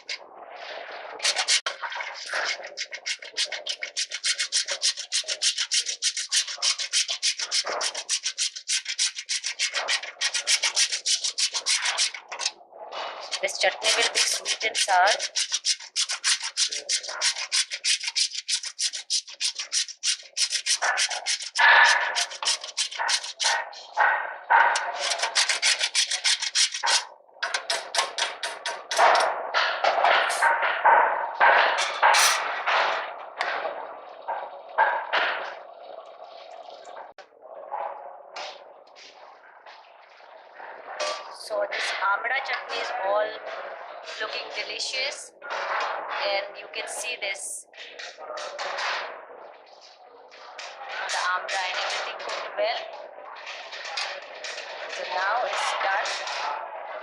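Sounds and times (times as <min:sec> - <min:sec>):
spatula scraping a pan: 0:01.1 - 0:33.6, 0:41.0 - 0:49.2, 0:50.4 - 0:56.6.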